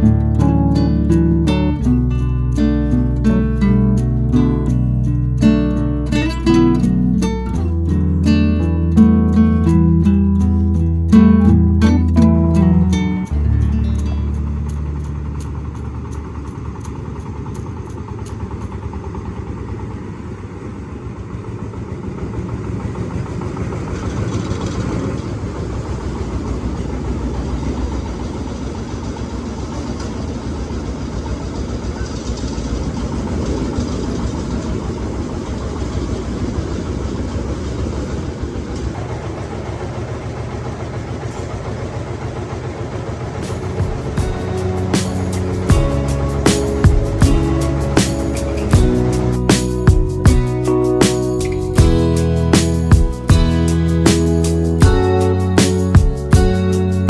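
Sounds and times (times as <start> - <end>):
engine rumbling: 0.0 - 57.0
sharp ticks: 13.3 - 19.0.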